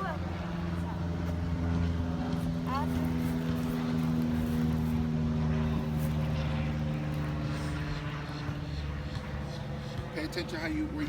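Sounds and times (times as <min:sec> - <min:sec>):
low engine hum: 0:00.0 - 0:11.0.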